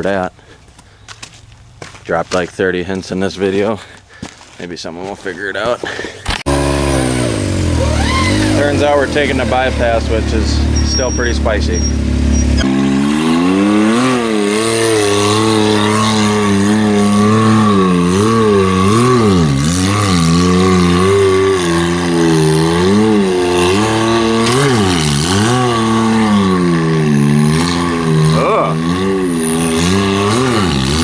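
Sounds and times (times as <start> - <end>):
engine revving: 6.3 - 31.0.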